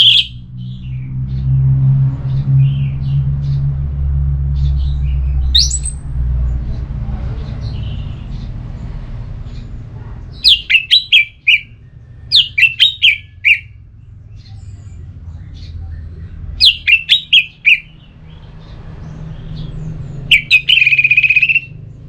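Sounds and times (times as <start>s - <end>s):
thrush singing whistled notes: 0.0s - 0.4s, 5.5s - 6.0s, 10.4s - 13.8s, 16.6s - 18.0s, 20.3s - 21.8s
low rumble: 0.0s - 10.4s.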